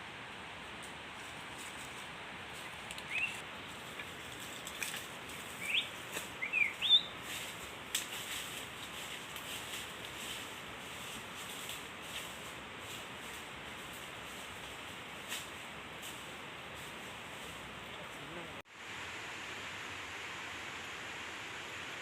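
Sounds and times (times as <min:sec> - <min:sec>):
steady outdoor hiss: 0:00.0 - 0:22.0
small bird chirping: 0:03.0 - 0:03.4, 0:05.6 - 0:07.2.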